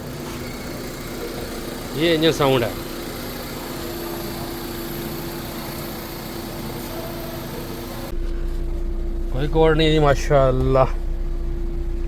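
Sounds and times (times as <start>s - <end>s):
car engine idling: 0.0s - 12.0s
dull deep hum: 7.6s - 12.0s.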